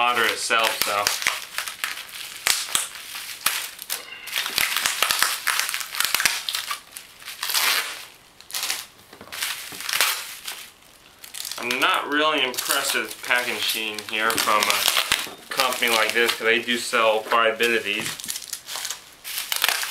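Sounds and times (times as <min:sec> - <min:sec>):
plastic packaging crinkling: 0:00.0 - 0:19.9.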